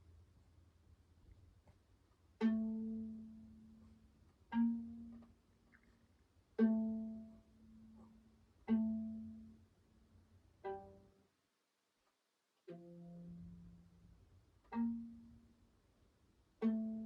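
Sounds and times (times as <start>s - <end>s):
plucked string notes: 2.4s - 5.9s, 6.5s - 9.7s, 10.6s - 11.3s, 12.6s - 15.7s, 16.6s - 17.0s.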